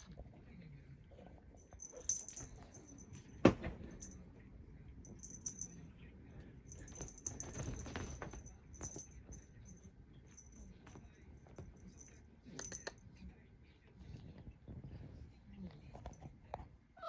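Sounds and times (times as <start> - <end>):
small bell jingling: 1.6 - 4.3, 5.0 - 6.0, 6.6 - 13.0
sharp thump: 3.4 - 4.2
soft knocks: 3.4 - 4.2.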